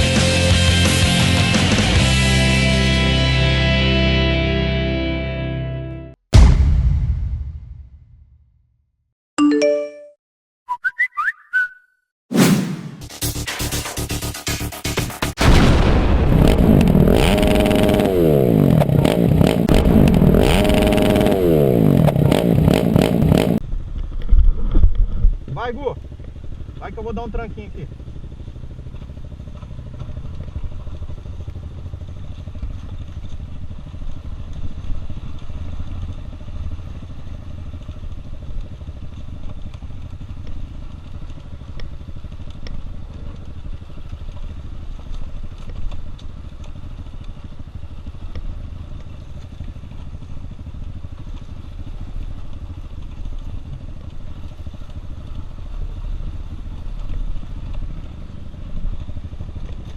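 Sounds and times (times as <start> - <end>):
dirt bike engine running: 12.8 - 59.9.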